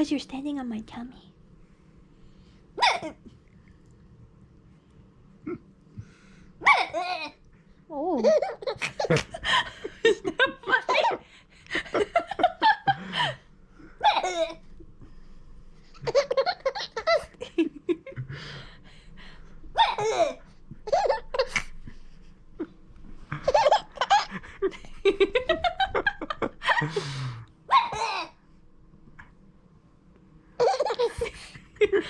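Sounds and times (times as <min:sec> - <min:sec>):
baby laughing: 0:06.6 - 0:07.4, 0:08.2 - 0:09.6, 0:14.0 - 0:14.6, 0:16.0 - 0:17.4, 0:19.8 - 0:21.8, 0:23.4 - 0:24.4, 0:30.6 - 0:31.5.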